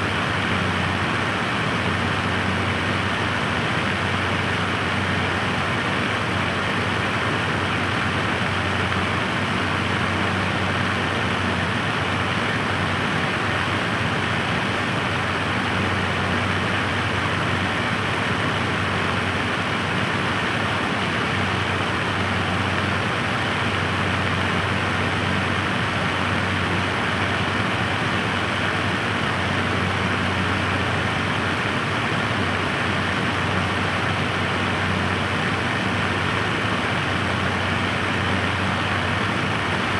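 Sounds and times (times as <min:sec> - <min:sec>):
electric fan rushing air: 0:00.0 - 0:39.9.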